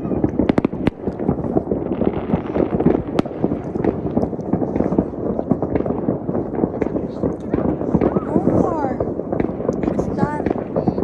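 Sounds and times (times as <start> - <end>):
continuous rumble: 0.0 - 11.0
fireworks cracking and popping: 0.0 - 11.0.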